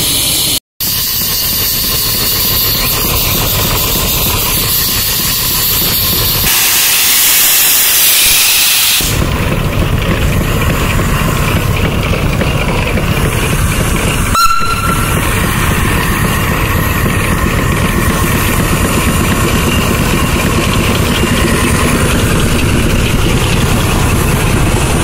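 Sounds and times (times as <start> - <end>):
sawmill machinery running: 0.0 - 25.0
brief high-pitched tone: 14.4 - 15.2.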